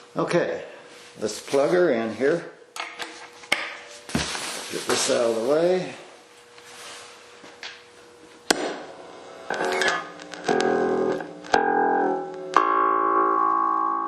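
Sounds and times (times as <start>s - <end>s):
plucked electric bass notes: 10.4s - 14.0s.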